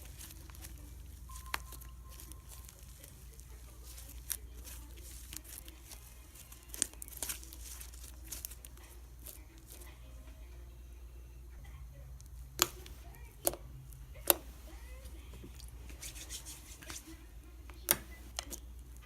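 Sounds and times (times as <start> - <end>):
low background hum: 0.0 - 19.0
slime popping while kneaded: 12.6 - 13.6.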